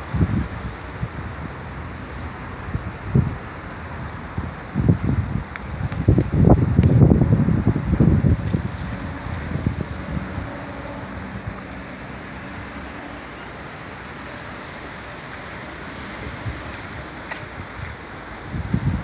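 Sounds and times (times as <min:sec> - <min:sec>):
strong wind blowing: 0:00.0 - 0:19.0.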